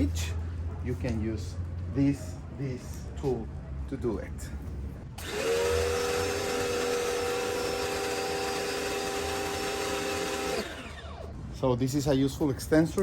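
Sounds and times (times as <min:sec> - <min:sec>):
pressure washer motor hum: 0:05.2 - 0:11.4.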